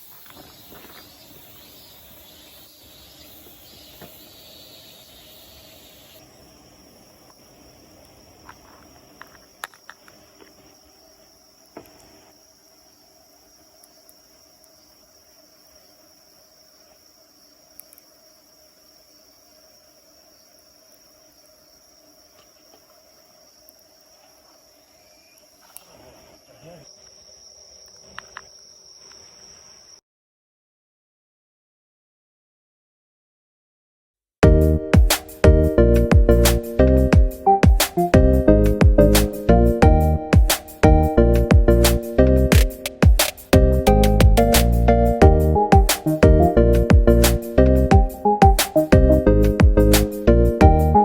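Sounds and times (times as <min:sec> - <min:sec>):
crickets chirping: 0:00.0 - 0:30.0, 0:34.4 - 0:51.0
insects trilling: 0:00.0 - 0:30.0, 0:34.7 - 0:51.0
sharp clicks: 0:42.5 - 0:43.5.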